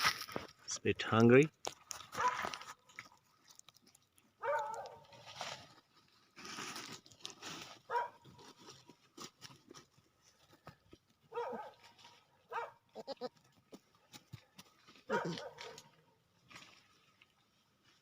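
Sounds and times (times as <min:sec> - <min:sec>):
crunching and rustling: 0:00.0 - 0:18.0
goat kid bleating: 0:12.9 - 0:13.5.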